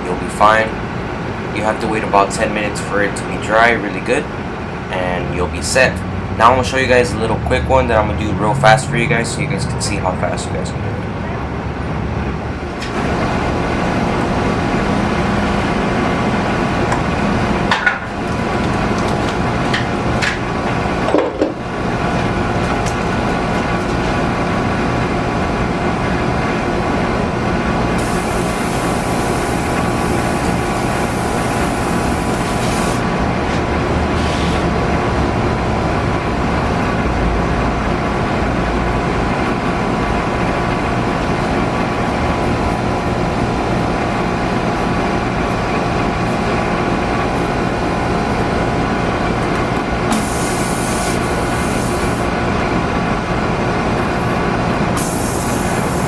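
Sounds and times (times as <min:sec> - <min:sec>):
sharp hiss: 0:28.0 - 0:33.0, 0:50.1 - 0:52.3, 0:55.0 - 0:56.0.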